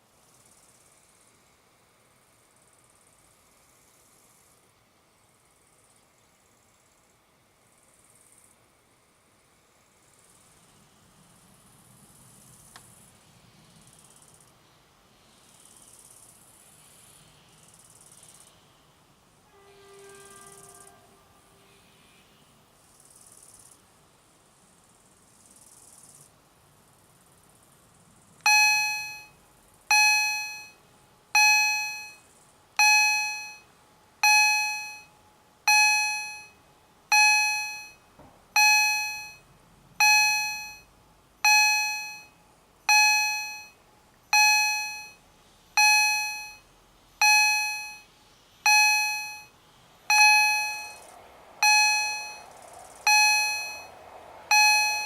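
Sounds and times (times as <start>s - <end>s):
level crossing gong bell: 53.1s - 53.9s.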